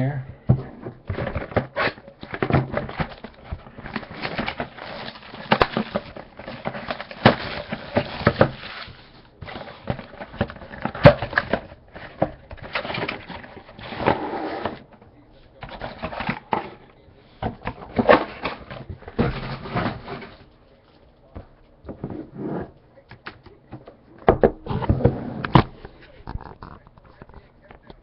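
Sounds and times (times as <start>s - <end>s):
packaging crinkling and rustling: 1.1s - 14.1s.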